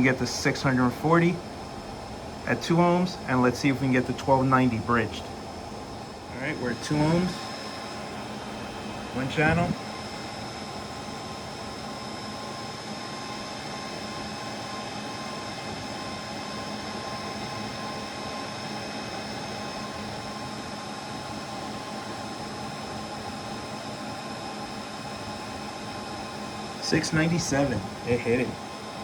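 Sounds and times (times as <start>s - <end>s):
faint steady tones: 0.0s - 18.1s, 24.7s - 29.0s
cooling fans whirring: 0.0s - 29.0s.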